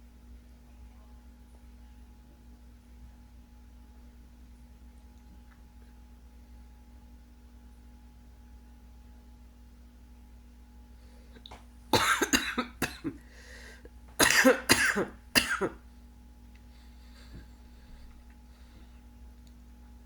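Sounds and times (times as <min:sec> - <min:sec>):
person coughing: 0:12.0 - 0:13.3, 0:14.2 - 0:15.8.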